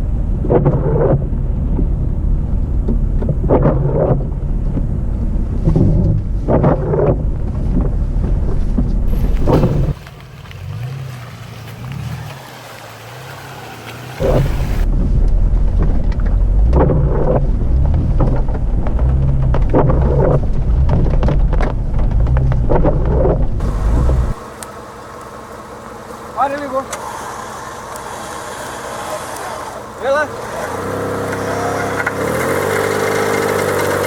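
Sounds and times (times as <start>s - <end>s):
engine revving: 0.0s - 7.9s, 9.1s - 34.0s.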